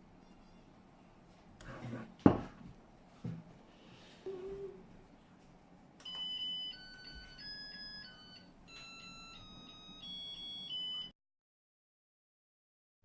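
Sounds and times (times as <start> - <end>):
rice cooker beeping melody: 6.1 - 11.1.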